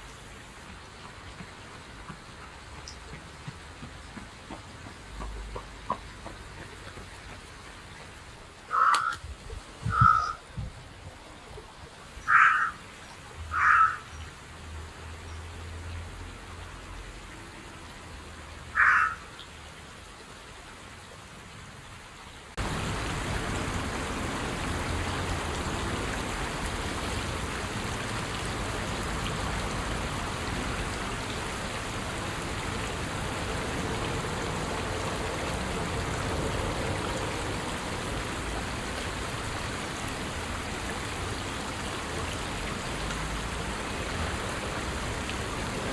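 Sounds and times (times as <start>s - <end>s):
running water rushing: 0.0s - 45.9s
crow cawing: 8.7s - 9.2s, 9.9s - 10.4s, 12.2s - 12.8s, 13.5s - 14.1s, 18.7s - 19.3s.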